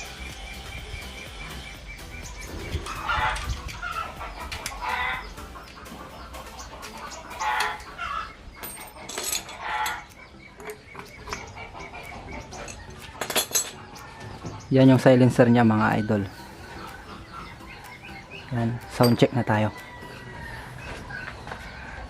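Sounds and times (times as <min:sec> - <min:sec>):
chickens clucking and squawking: 0:00.0 - 0:22.0.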